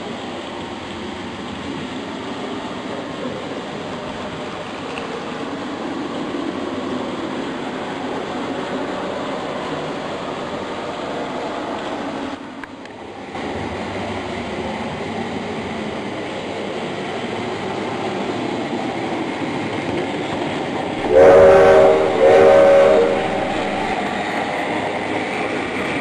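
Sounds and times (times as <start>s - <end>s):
model train rumbling on track: 0.0s - 26.0s
chime train horn blasts: 21.0s - 24.2s.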